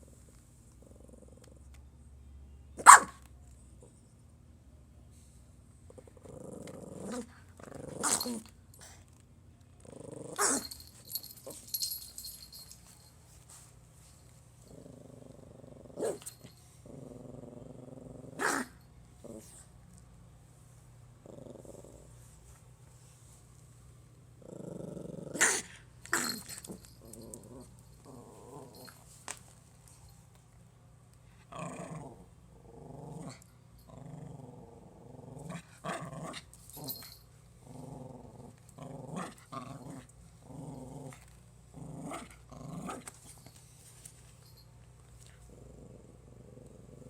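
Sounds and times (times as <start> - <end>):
puppy growling: 0.7 - 1.7, 5.9 - 8.5, 9.8 - 10.8, 14.7 - 19.6, 21.2 - 22.2, 24.4 - 29.0, 31.5 - 43.1, 45.2 - 47.0
sharp dog barks: 2.8 - 3.2.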